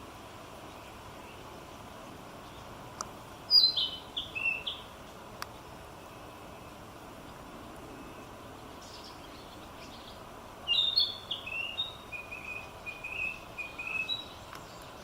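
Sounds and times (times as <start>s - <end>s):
bird singing: 3.5s - 15.0s.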